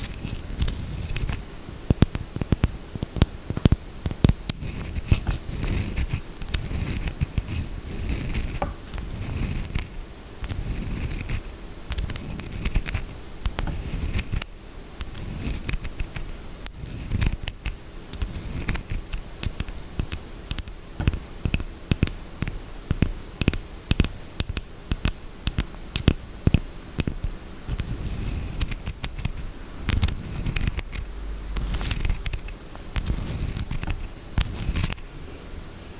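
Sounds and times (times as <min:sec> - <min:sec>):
scratching on soap: 0:00.0 - 0:01.4, 0:02.0 - 0:35.0.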